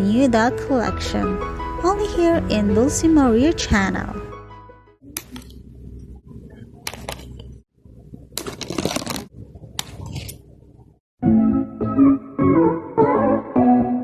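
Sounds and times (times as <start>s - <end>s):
packaging scraping and rustling: 8.4s - 9.3s.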